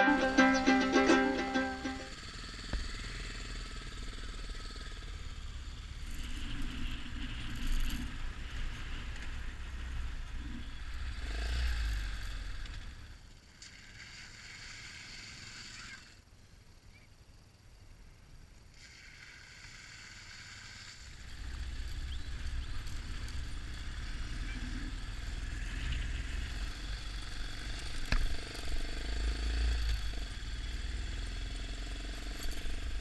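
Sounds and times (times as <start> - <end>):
motorcycle engine running: 0.0 - 9.0, 21.0 - 33.0.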